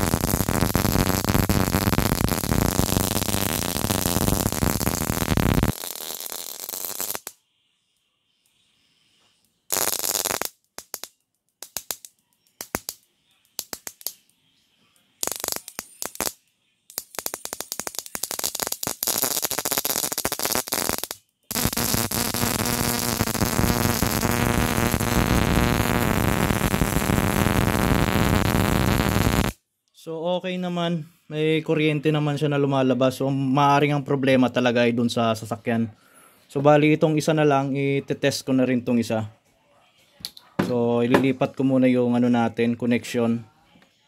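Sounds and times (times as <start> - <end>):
sparks crackling: 0.0 - 7.4, 9.7 - 14.3, 15.2 - 29.6
steady electrical hum: 19.2 - 29.5.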